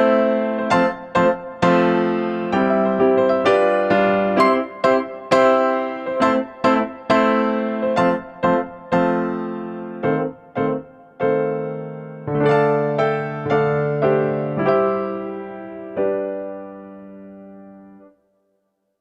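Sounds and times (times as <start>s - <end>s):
piano-like keyboard music: 0.0s - 18.2s.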